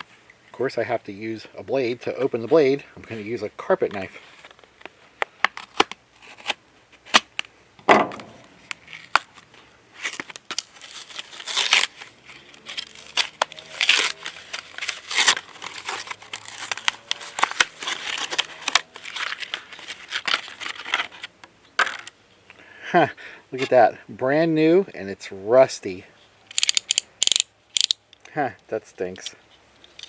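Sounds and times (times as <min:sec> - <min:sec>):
packaging crinkling and tearing: 0:05.4 - 0:07.4, 0:08.4 - 0:21.3
sharp clicks: 0:26.5 - 0:28.2.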